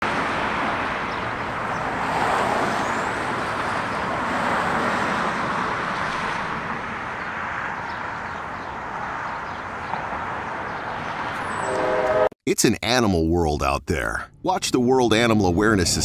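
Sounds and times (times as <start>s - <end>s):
road traffic hiss: 0.1s - 12.2s.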